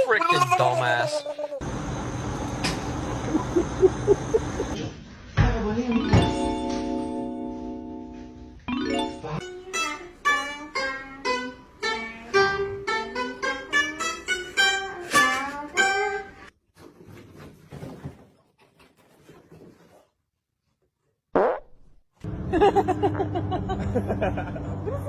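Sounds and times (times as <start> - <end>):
plucked string melody: 8.7 - 16.4.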